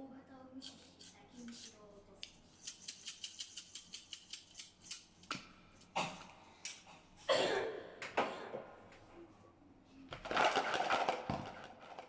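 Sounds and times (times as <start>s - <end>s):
knife scraping cutting board: 2.6s - 5.1s.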